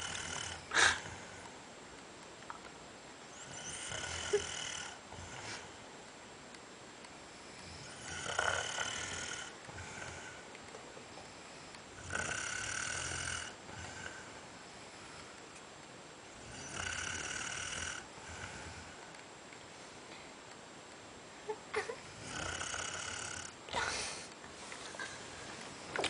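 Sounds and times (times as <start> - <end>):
person snoring: 0.0 - 1.3, 3.4 - 5.7, 7.6 - 10.4, 12.0 - 14.3, 16.4 - 19.0, 22.0 - 24.1.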